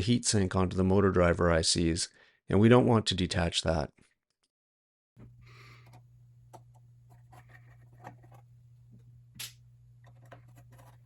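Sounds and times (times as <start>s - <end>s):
steady low hum: 5.2s - 11.0s.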